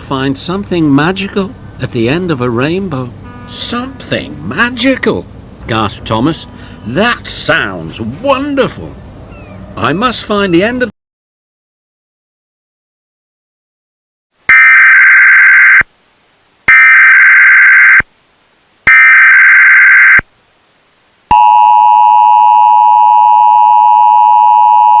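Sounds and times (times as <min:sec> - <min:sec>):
two-tone attention signal: 0:21.3 - 0:25.0.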